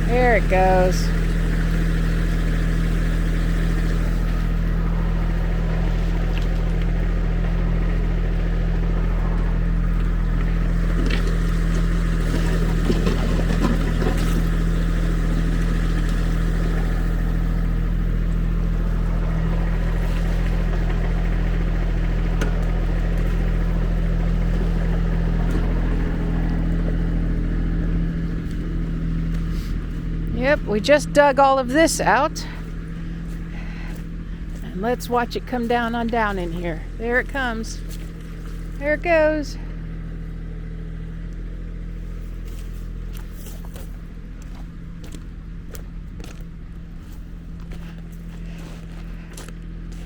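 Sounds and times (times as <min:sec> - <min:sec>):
diesel engine running: 0:00.0 - 0:50.0
backhoe knocks and scrapes: 0:09.3 - 0:16.8.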